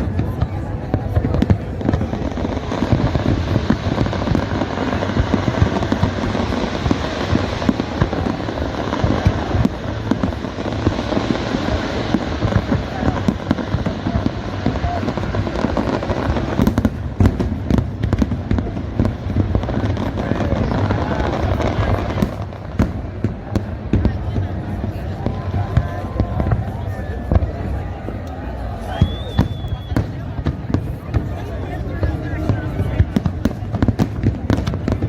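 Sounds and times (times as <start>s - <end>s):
crowd voices: 0.0s - 35.0s
fireworks booming: 0.0s - 35.0s.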